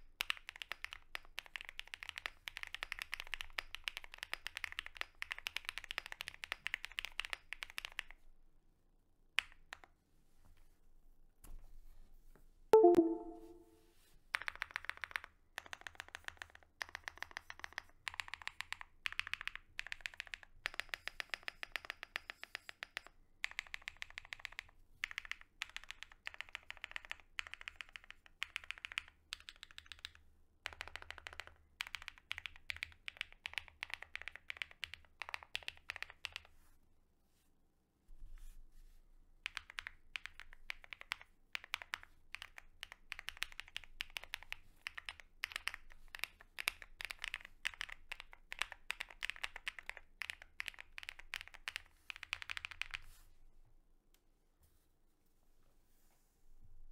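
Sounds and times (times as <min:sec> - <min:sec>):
brief loud pitched sound: 0:12.8 - 0:13.8
mechanical keyboard keys pressed: 0:23.6 - 0:36.4, 0:39.5 - 0:53.0.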